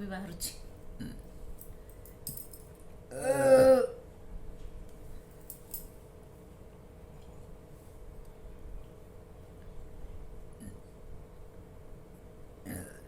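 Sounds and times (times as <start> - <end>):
loud drawn-out burp: 1.0 - 1.2, 10.6 - 10.9, 12.6 - 13.0.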